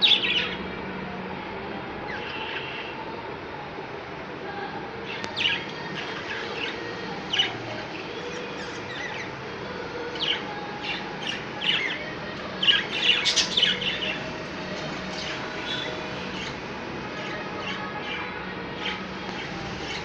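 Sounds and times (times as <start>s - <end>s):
budgerigars chirping: 10.2s - 14.2s.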